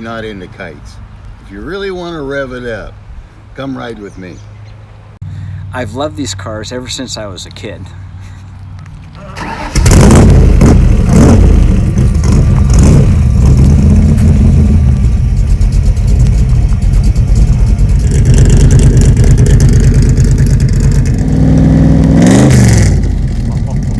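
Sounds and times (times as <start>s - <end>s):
car engine idling: 8.8s - 23.9s.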